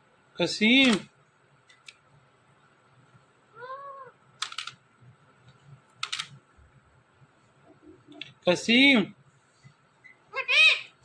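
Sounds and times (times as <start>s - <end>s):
parrot call: 10.1s - 11.0s.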